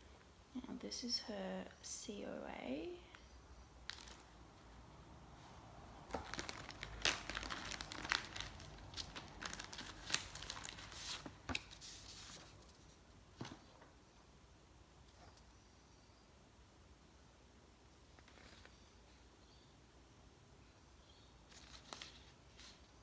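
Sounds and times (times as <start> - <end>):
packaging crinkling and rustling: 3.8 - 4.3, 6.1 - 12.8, 21.5 - 23.0.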